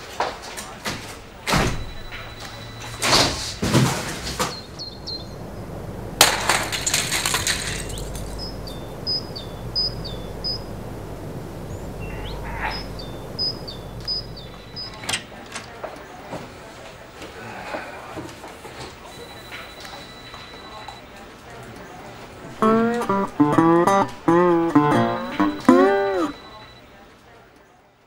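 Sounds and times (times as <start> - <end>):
bird chirping: 4.4 - 15.1.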